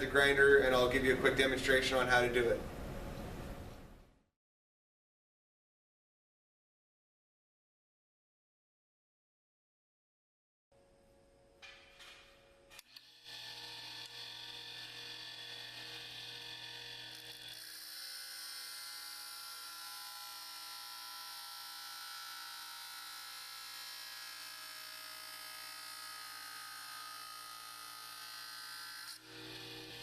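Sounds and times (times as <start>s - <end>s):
bench grinder running: 12.8s - 30.0s.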